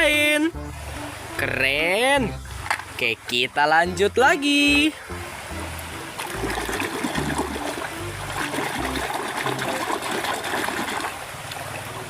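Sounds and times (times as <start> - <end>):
river water flowing: 0.0 - 12.0
water splashing: 4.9 - 12.0.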